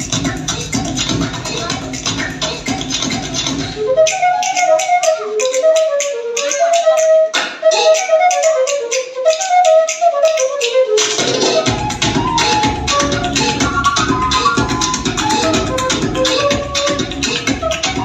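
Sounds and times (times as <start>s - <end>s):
dance music: 0.0s - 4.0s, 11.2s - 18.0s
flute-like melody: 1.4s - 18.0s.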